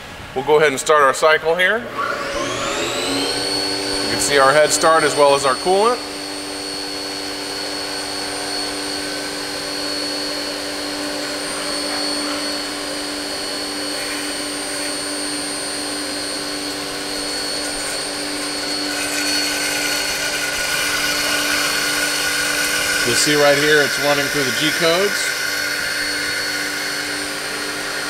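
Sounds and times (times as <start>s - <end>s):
higher tone: 0.4s - 13.9s
milling spindle whine: 1.6s - 28.0s
coolant flow hissing: 16.6s - 28.0s.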